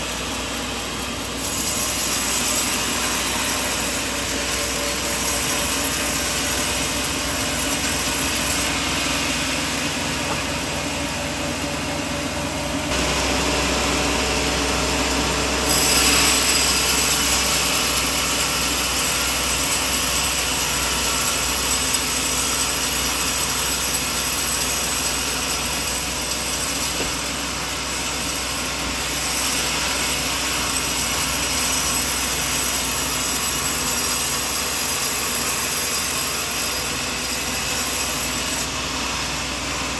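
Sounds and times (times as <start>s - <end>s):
sawmill sawing log: 0.0s - 39.9s
low hum: 4.2s - 18.9s.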